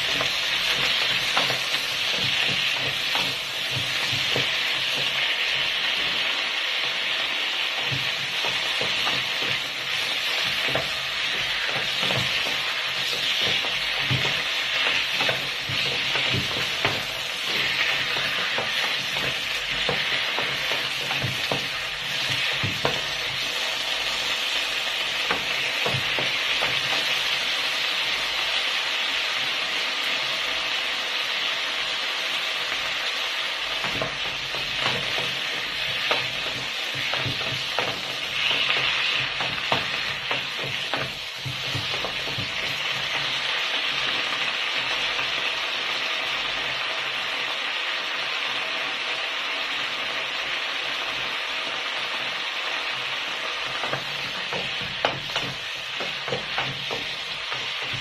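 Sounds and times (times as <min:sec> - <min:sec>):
spatula scraping and tapping pan: 0:00.0 - 0:28.4, 0:33.7 - 0:45.4, 0:53.6 - 0:58.0
oil sizzling in a pan: 0:00.0 - 0:58.0.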